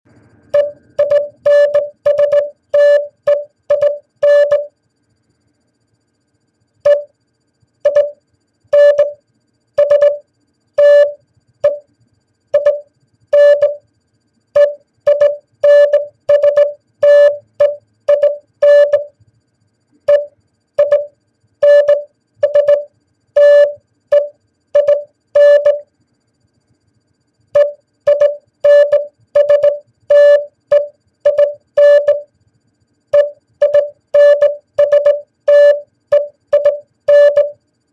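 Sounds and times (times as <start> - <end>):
morse code beeps: 0.5 - 4.7, 6.9 - 7.1, 7.8 - 8.2, 8.8 - 9.2, 9.8 - 10.2, 10.8 - 11.8, 12.6 - 13.8, 14.6 - 19.1, 20.1 - 25.9, 27.6 - 32.3, 33.2 - 37.6.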